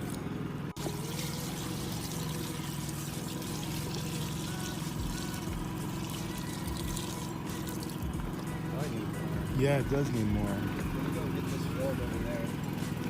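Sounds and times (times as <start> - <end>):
generator running: 0.0 - 13.0
water pouring into a tub: 0.8 - 8.1.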